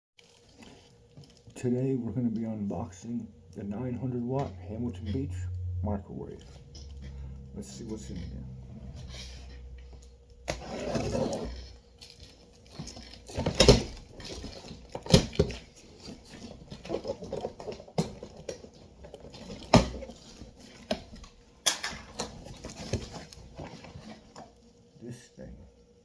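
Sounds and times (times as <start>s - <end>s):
packaging rustling: 9.2s - 21.4s.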